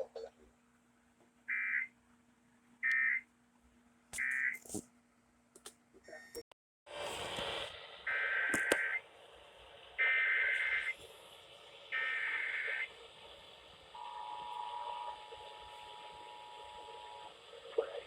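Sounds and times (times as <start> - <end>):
buzzy data tone bursts: 11.9 - 12.9.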